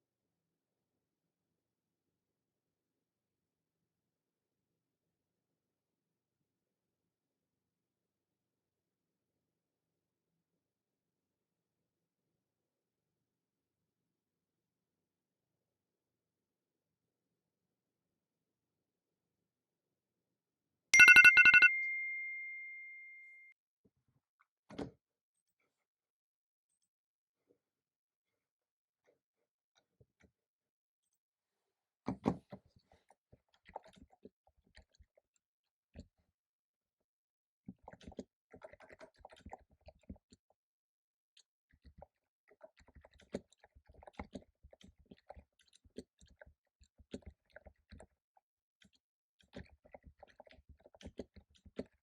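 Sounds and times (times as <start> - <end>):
keyboard typing clicks: 21.0 - 23.4
timer alarm sharp beeps: 21.0 - 23.4
ringing alarm tone: 21.0 - 23.5.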